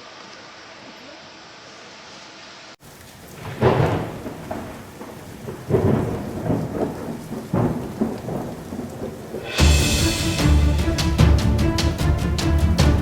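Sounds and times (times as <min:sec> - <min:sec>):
faint steady hiss: 0:00.0 - 0:13.0
rain: 0:00.0 - 0:13.0
rolling thunder: 0:03.2 - 0:13.0.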